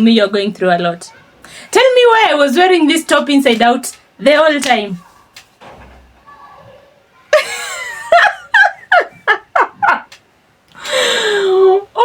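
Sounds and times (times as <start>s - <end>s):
woman laughing: 7.3s - 10.2s.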